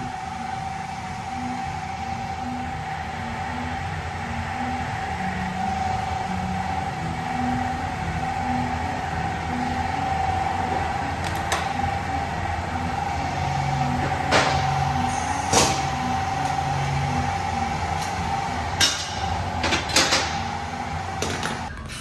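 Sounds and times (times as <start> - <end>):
steady hum with low pulse: 0.0 - 22.0.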